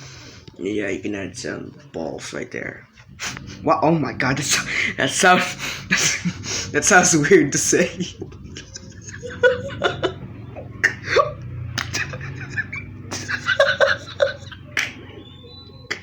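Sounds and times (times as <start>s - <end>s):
boy giggling: 4.6s - 16.0s.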